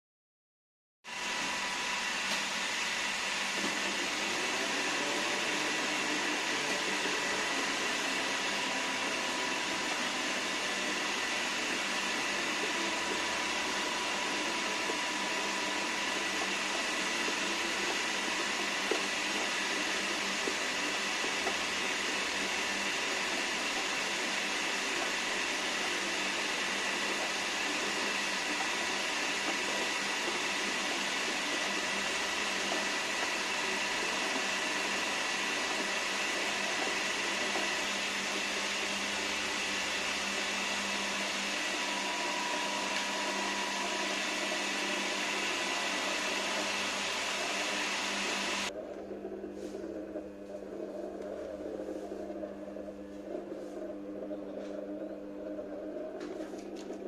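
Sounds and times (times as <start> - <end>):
electric hand mixer whining: 1.1 - 57.0.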